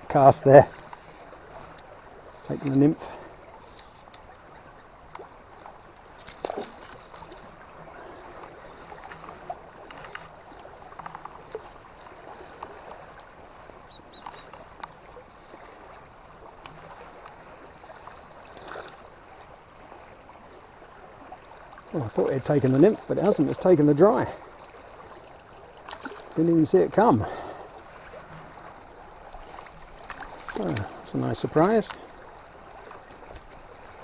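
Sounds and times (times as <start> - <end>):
river water flowing: 0.0 - 34.0
splashy clicks and ticks: 9.0 - 11.7, 29.5 - 32.1, 32.8 - 33.6.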